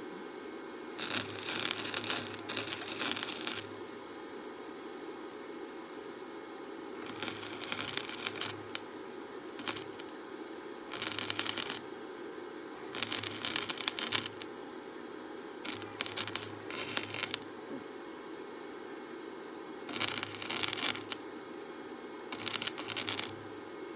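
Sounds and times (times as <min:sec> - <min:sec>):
arc welding crackle: 0:00.9 - 0:04.1, 0:07.0 - 0:10.2, 0:10.9 - 0:12.0, 0:12.9 - 0:14.6, 0:15.6 - 0:17.6, 0:19.9 - 0:21.5, 0:22.3 - 0:23.9
welder hum: 0:00.9 - 0:04.3, 0:07.0 - 0:10.3, 0:10.9 - 0:12.1, 0:12.8 - 0:14.6, 0:15.6 - 0:17.9, 0:19.9 - 0:21.5, 0:22.3 - 0:23.9.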